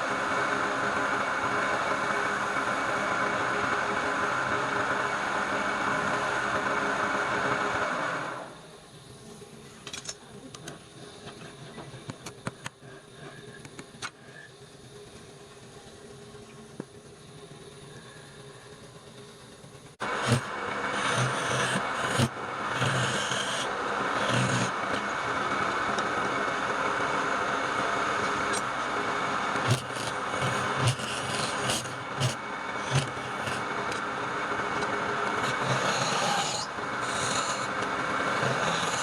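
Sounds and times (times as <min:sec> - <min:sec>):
workshop machine motor running: 0:20.0 - 0:39.0.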